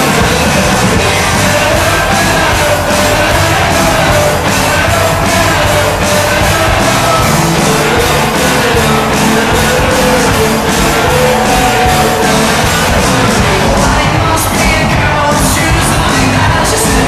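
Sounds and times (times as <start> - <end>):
loud rock music: 0.0 - 17.0.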